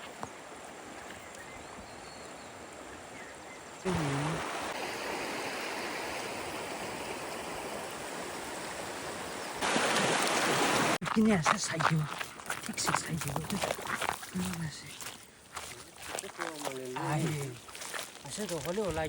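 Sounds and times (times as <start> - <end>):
river water rushing over stones: 3.9 - 11.0.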